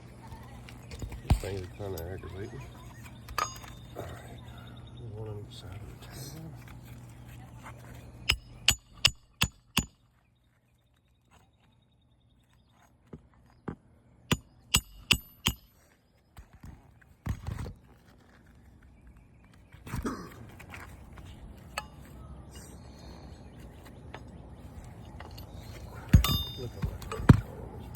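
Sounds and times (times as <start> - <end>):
hammer striking roofing nails: 14.3 - 15.7, 26.1 - 27.4.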